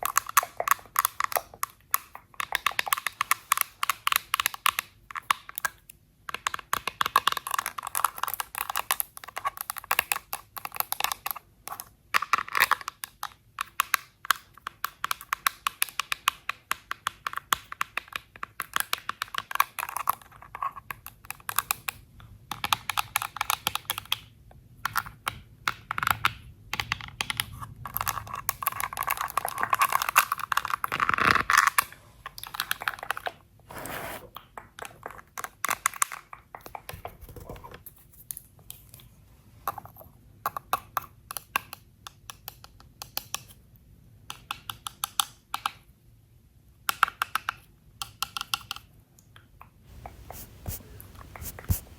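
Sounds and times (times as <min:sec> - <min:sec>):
rubbing on packaging: 0:33.7 - 0:34.3, 0:49.9 - 0:51.9.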